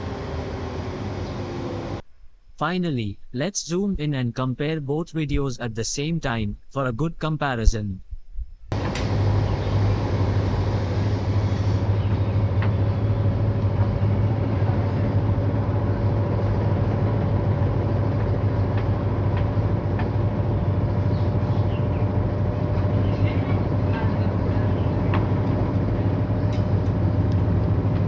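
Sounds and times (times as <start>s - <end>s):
washing machine spinning: 0.0s - 2.0s, 8.7s - 28.0s.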